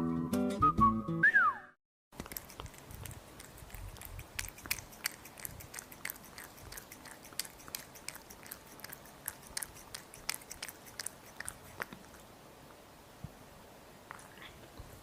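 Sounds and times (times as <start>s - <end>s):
kitten chewing and mouth clicks: 2.2s - 12.3s, 14.1s - 14.6s.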